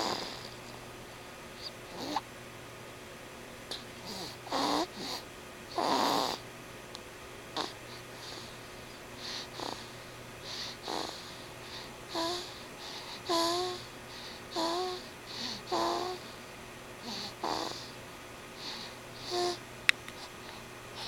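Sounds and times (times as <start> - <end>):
rasping snores and snorts: 0.0 - 0.6, 1.9 - 2.2, 4.0 - 6.4, 9.6 - 9.9, 10.8 - 11.2, 15.6 - 16.2, 17.0 - 17.9.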